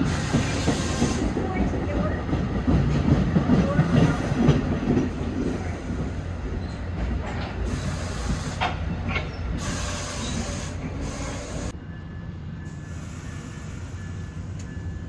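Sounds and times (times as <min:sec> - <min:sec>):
train wheels rumbling over rails: 0:00.0 - 0:11.8.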